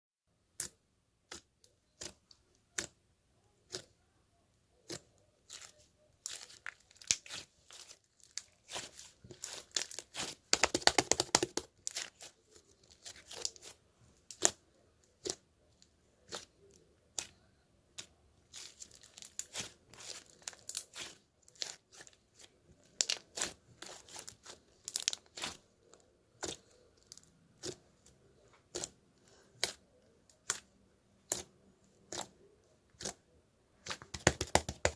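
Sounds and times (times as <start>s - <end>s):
handling clicks and crinkling: 4.9s - 29.0s.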